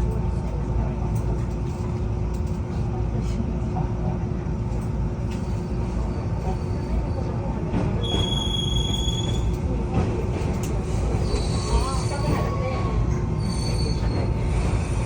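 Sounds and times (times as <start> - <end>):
electric train rumbling: 0.0 - 15.0
high-pitched wheel squeal: 8.0 - 9.5.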